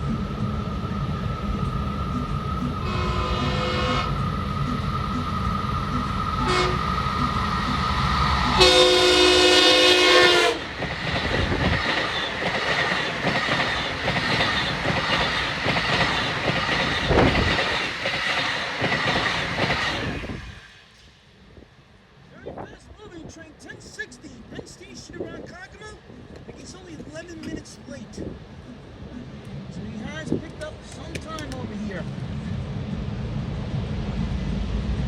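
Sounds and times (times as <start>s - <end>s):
train wheels clacking on rails: 0.0s - 20.4s, 30.1s - 32.0s
train horn chord: 2.8s - 4.3s, 6.4s - 7.1s, 8.4s - 10.6s.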